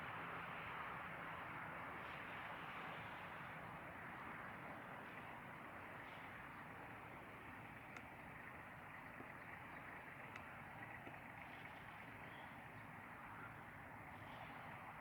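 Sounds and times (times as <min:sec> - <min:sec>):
outdoor background hush: 0:00.0 - 0:15.0
faint ticks: 0:07.5 - 0:12.9.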